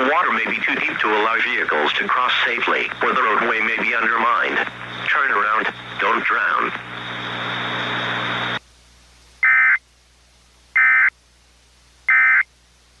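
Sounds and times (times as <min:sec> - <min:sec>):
low hum: 0:00.0 - 0:08.6
steady hiss: 0:00.0 - 0:09.4.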